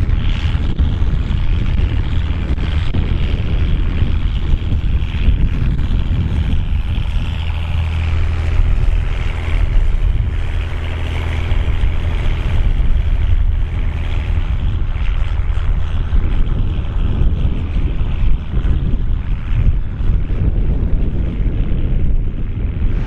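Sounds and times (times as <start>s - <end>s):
tractor diesel engine running: 1.2s - 17.8s.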